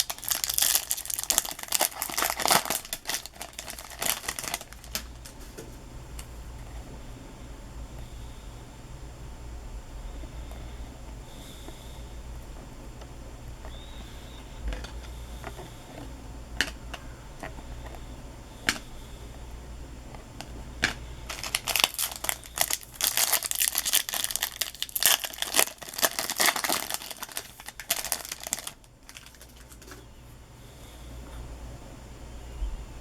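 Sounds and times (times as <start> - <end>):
wrapper crinkling and tearing: 0.0 - 5.4, 21.3 - 30.0.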